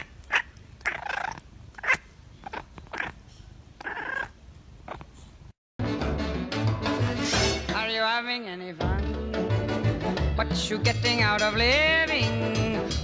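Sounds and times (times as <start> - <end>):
cat calling: 0.0 - 3.2, 3.8 - 5.1.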